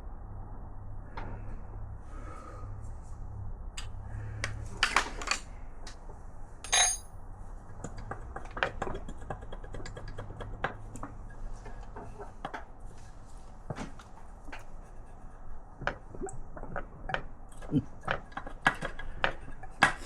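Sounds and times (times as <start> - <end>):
metal tools clinking and knocking: 4.8 - 5.5, 6.6 - 7.1.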